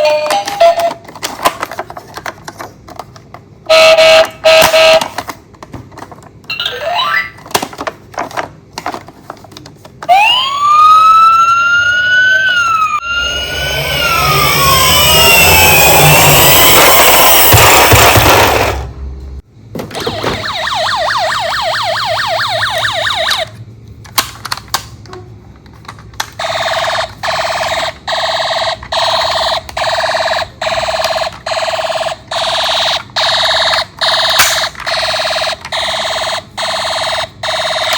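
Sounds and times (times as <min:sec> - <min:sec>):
toy electronic sirens: 0:03.7 - 0:05.1, 0:06.5 - 0:07.4, 0:10.0 - 0:18.7, 0:20.0 - 0:23.6, 0:26.4 - 0:37.9.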